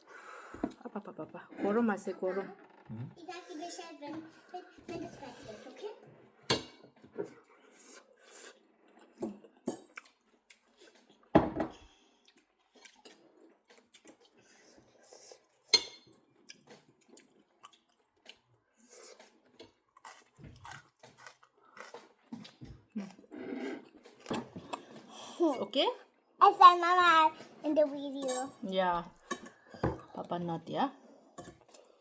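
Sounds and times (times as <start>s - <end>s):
plates and spoons clinking: 6.5s - 7.0s, 15.7s - 16.2s.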